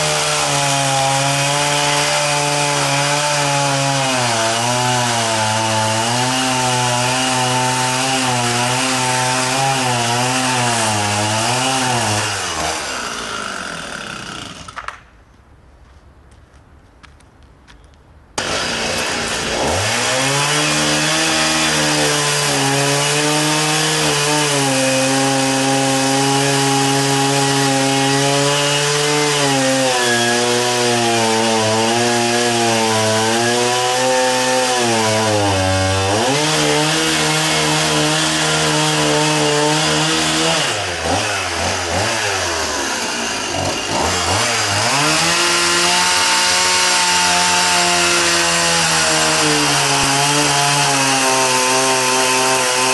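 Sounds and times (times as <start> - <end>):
chainsaw cutting wood: 0.0 - 15.1, 18.4 - 52.9.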